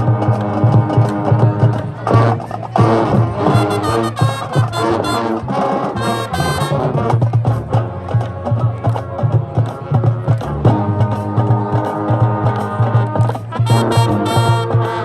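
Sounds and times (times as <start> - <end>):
marching band playing: 0.0 - 15.0
steady drums: 0.0 - 15.0
brass playing tune: 2.2 - 7.8, 9.8 - 15.0.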